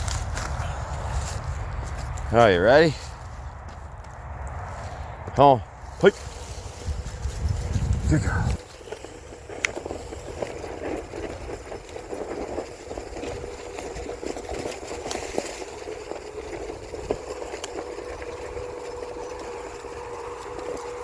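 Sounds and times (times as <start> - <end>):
tyres rumbling on dirt: 0.0 - 21.0
electric motor whining: 16.2 - 21.0.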